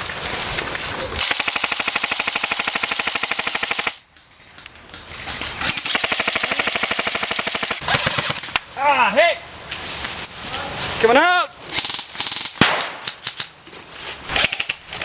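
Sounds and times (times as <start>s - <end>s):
airsoft gun full-auto rattle: 1.2s - 4.0s, 5.8s - 8.4s.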